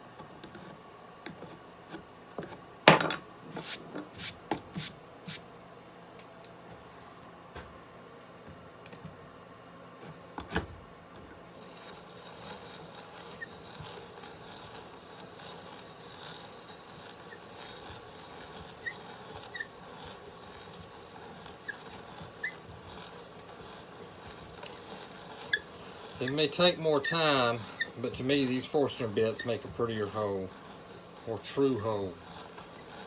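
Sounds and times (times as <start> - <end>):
hand brace boring wood: 11.2 - 33.0
brace squeaks and clicks: 11.6 - 33.0.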